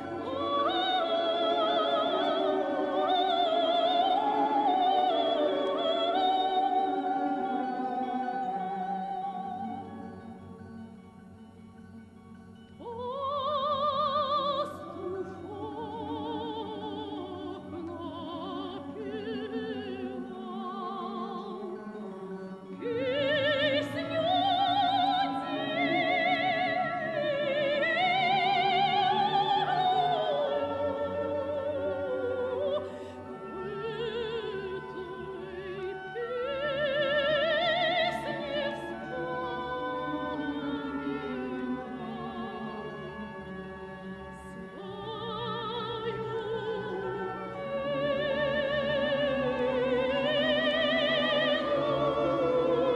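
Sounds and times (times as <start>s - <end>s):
operatic singing: 0.0s - 11.5s, 12.6s - 52.9s
classical orchestra: 0.0s - 52.9s.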